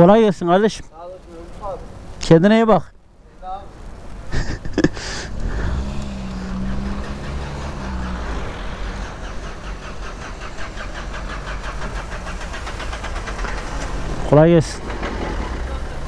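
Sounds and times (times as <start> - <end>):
vehicle engine running: 4.9 - 16.0.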